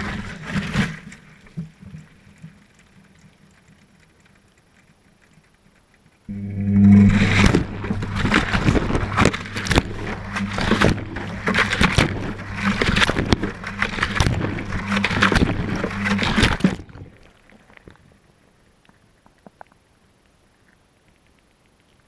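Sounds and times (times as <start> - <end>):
washing machine motor hum: 6.3 - 16.8
water sloshing: 6.3 - 18.2.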